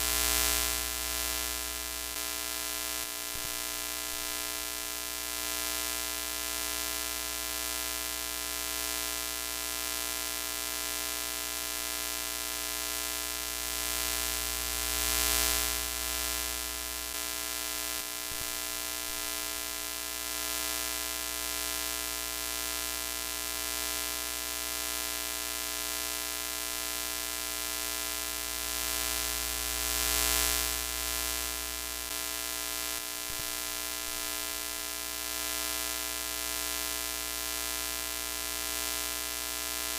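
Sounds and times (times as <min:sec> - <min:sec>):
tv static hiss and buzz: 0:00.0 - 0:04.5, 0:12.5 - 0:19.6, 0:26.2 - 0:39.9.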